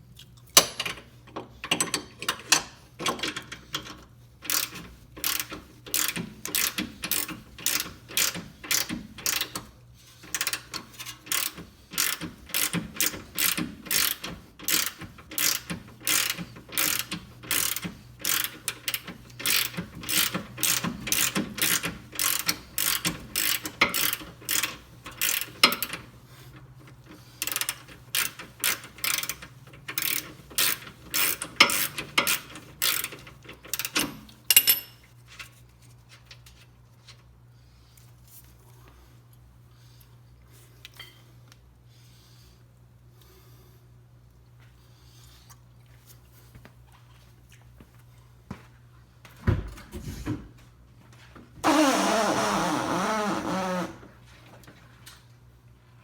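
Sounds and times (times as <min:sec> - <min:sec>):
ratchet wrench clicking: 0:04.5 - 0:09.6, 0:11.3 - 0:26.0, 0:27.4 - 0:34.1.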